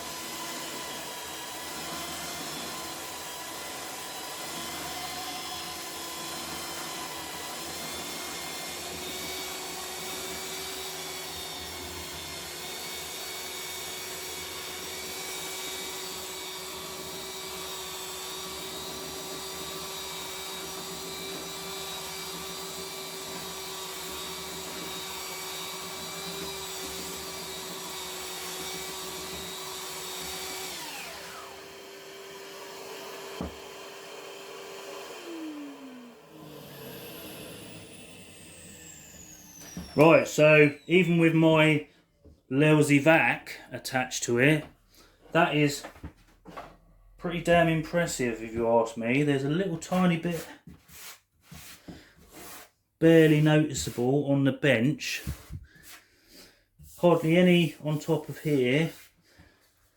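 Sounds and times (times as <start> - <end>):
belt sander sanding: 0.0 - 35.9, 47.2 - 54.2, 54.8 - 59.7
vacuum cleaner running: 0.0 - 41.5, 55.2 - 59.1.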